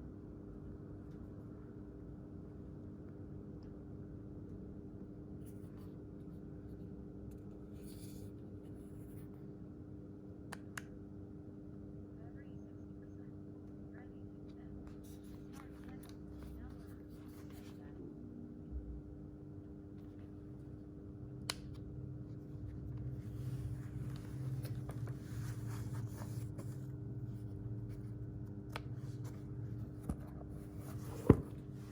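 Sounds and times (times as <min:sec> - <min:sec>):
steady low hum: 0:00.0 - 0:31.9
rustling and scraping objects: 0:22.8 - 0:28.1, 0:29.0 - 0:31.9.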